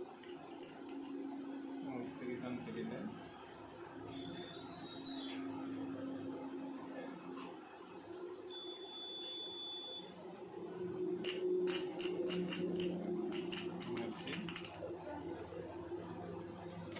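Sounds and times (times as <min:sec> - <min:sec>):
high-pitched beep: 0:08.5 - 0:10.1
low hum: 0:10.3 - 0:16.9
welding arc crackling: 0:11.2 - 0:14.8.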